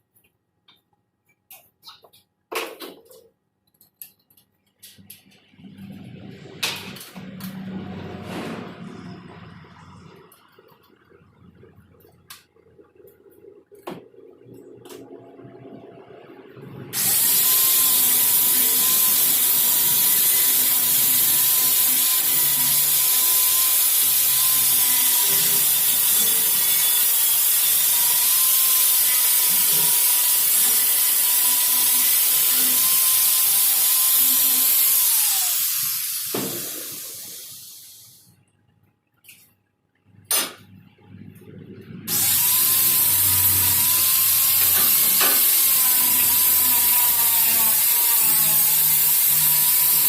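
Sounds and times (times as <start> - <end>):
angle grinder whining: 14.6 - 38.2, 41.6 - 50.0.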